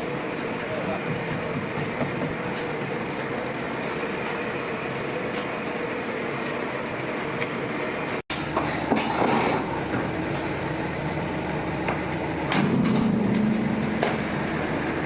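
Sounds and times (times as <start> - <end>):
machine hum: 8.3 - 15.0.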